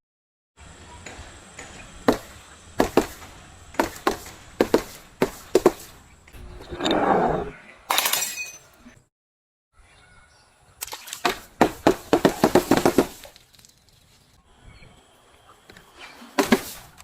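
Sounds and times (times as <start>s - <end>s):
glass breaking and crunching: 7.9s - 8.7s.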